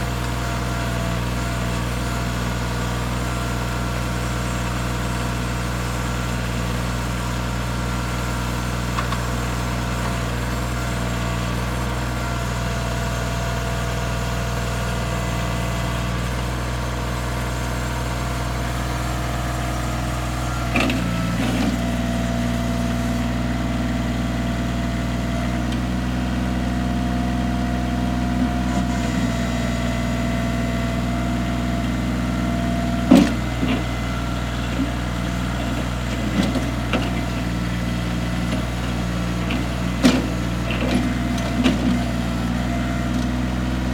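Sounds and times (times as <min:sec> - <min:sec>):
diesel engine idling: 0:00.0 - 0:43.9
clunk: 0:20.7 - 0:21.9, 0:33.0 - 0:33.9, 0:39.4 - 0:42.1.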